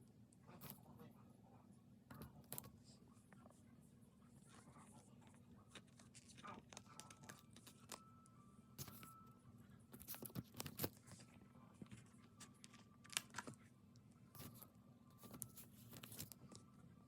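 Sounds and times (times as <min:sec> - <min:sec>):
paper and plastic crinkling: 0:08.8 - 0:09.1, 0:10.0 - 0:13.6, 0:14.4 - 0:16.6.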